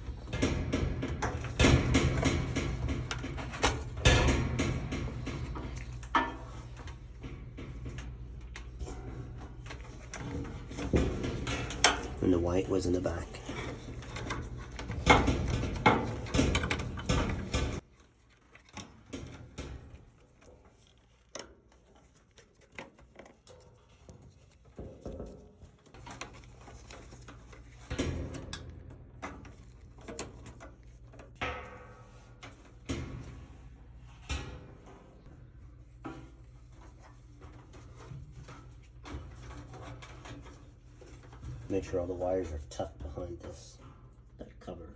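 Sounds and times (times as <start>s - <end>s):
hands fitting plastic parts: 13.1s - 33.3s.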